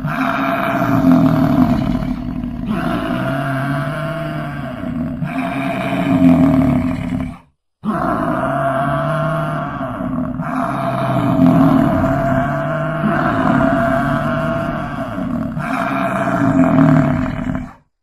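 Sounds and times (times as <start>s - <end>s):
bison bellowing: 8.9s - 17.7s.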